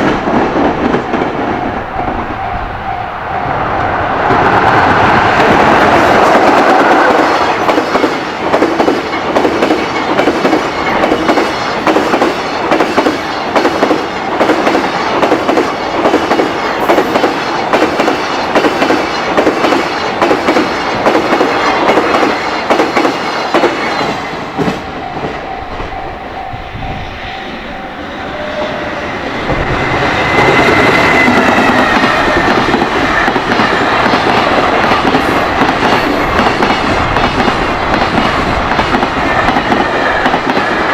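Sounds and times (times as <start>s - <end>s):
train rumble with high whine: 0.0s - 40.9s.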